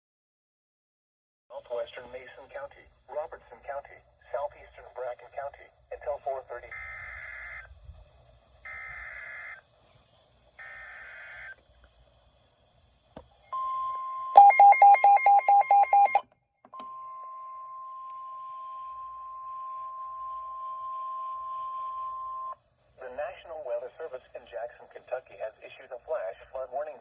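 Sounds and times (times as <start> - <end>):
loud rapid beeping: 14.4 - 16.2
steady alarm tone: 14.4 - 16.2.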